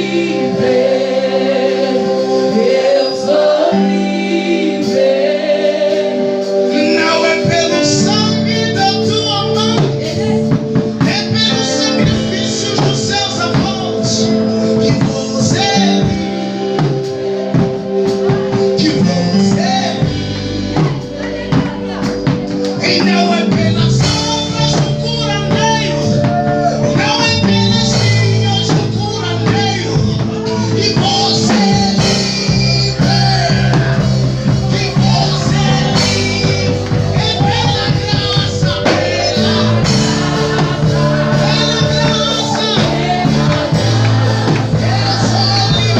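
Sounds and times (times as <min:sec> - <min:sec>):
guitar: 0:00.0 - 0:45.9
rock song with bass line: 0:06.1 - 0:45.9
steady beat with tambourine: 0:16.8 - 0:45.9.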